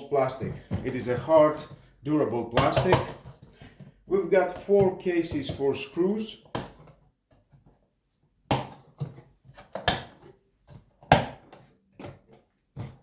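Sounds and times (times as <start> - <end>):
plastic toolbox knocking: 0.3 - 7.0.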